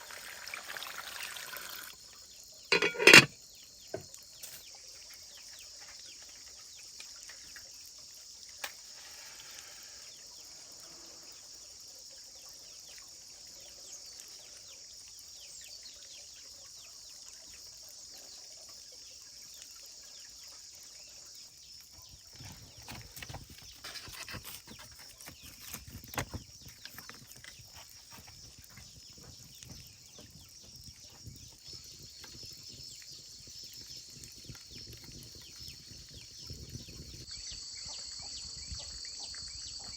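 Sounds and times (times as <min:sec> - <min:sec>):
clattering knocks and thumps: 0:02.7 - 0:03.3.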